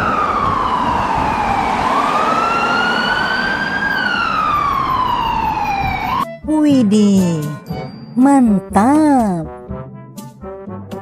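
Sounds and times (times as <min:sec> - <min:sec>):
ambulance siren wailing: 0:00.0 - 0:07.4
traffic rumble: 0:00.0 - 0:07.7.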